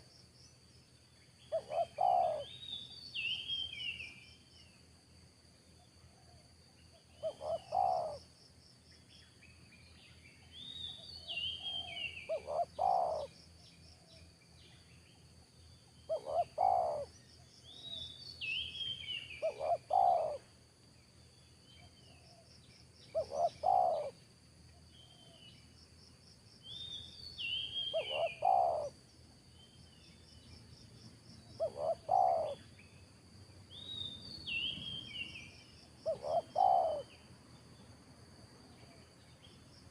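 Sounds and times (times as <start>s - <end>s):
dove cooing: 1.5s - 2.5s, 7.2s - 8.2s, 11.6s - 13.3s, 16.1s - 17.1s, 19.4s - 20.5s, 23.1s - 24.2s, 27.9s - 29.0s, 31.6s - 32.6s, 36.0s - 37.1s
birds chirping: 17.8s - 20.4s, 26.7s - 28.9s, 31.6s - 33.0s, 33.7s - 37.2s.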